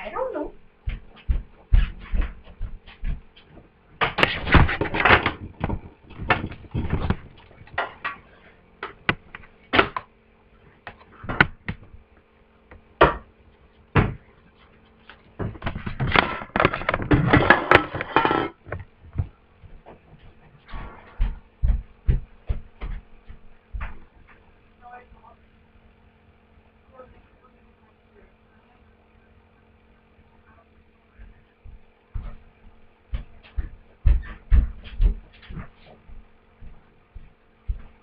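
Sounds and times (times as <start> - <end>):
faint steady hum: 0.0 - 38.0
rustling and scraping: 13.6 - 18.9, 19.9 - 21.5.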